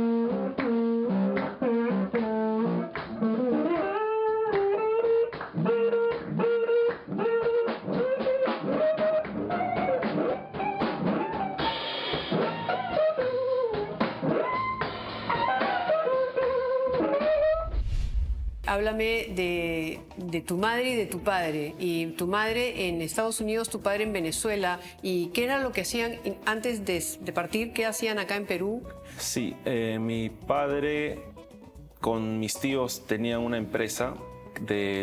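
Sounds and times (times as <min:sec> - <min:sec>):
sliding lead melody: 0:00.0 - 0:06.8
guitar: 0:00.0 - 0:17.7, 0:18.6 - 0:35.0
drum kit: 0:18.6 - 0:21.0.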